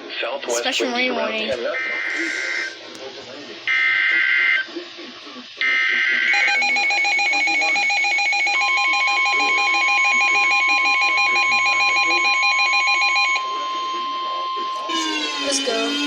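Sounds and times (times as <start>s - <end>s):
screechy digital header data: 1.6s - 2.8s, 5.5s - 16.0s
steady warning tone: 1.6s - 16.0s
fast-pulsing electronic beep alarm: 5.6s - 16.0s.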